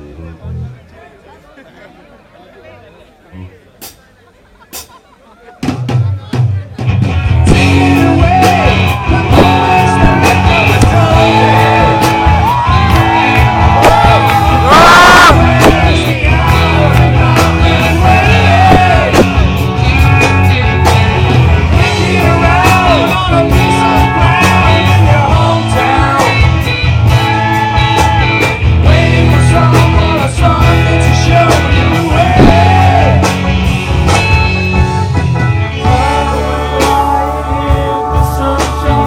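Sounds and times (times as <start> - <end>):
bass line: 0.0 - 0.9, 5.6 - 39.0
electric guitar: 6.8 - 39.0
person singing: 7.5 - 21.0, 21.7 - 33.4, 35.8 - 39.0.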